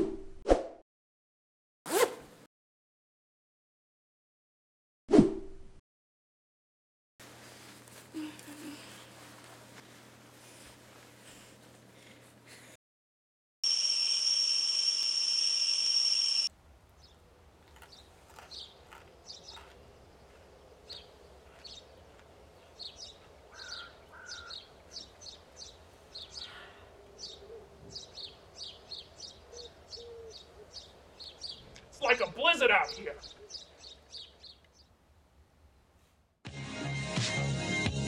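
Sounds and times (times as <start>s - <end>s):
loud high-pitched tone: 13.6s - 16.5s
small birds chirping: 16.9s - 35.0s.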